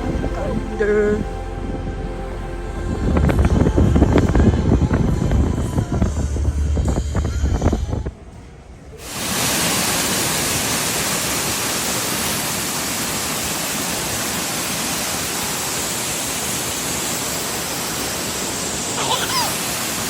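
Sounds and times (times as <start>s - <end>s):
rush of falling water: 9.0s - 20.0s.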